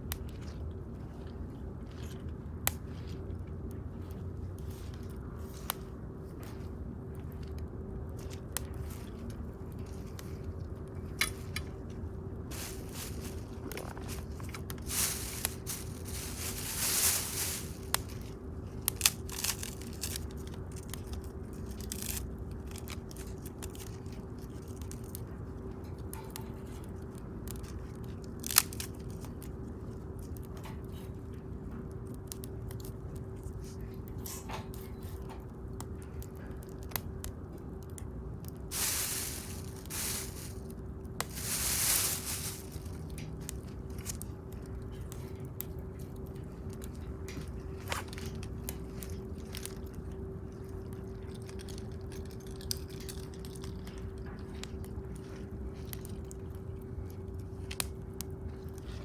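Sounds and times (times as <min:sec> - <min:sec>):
bonfire crackling: 0:12.4 - 0:21.0, 0:37.9 - 0:44.3
rustling swishes: 0:12.5 - 0:18.2, 0:38.7 - 0:43.0.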